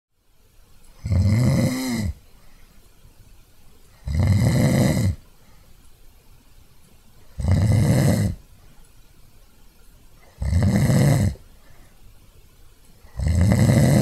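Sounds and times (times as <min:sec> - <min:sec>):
person snoring: 0:01.0 - 0:02.2, 0:04.0 - 0:05.2, 0:07.4 - 0:08.4, 0:10.2 - 0:11.4, 0:13.0 - 0:14.0.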